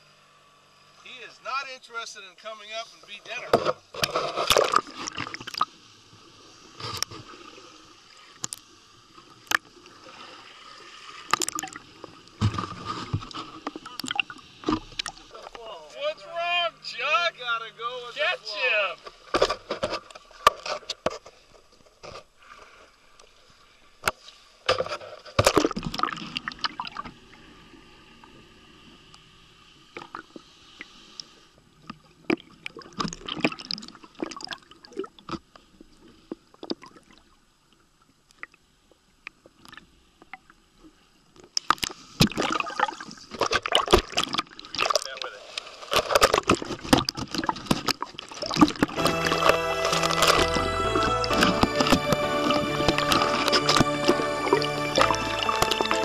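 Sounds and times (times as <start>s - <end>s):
faint steady hum: 0.0s - 20.5s
water sloshing and gurgling: 2.8s - 15.8s, 19.0s - 56.0s.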